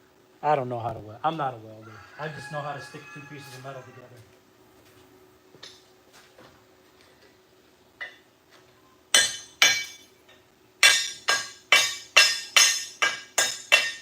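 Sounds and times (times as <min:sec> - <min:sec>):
hammer striking steel: 0:09.1 - 0:14.0.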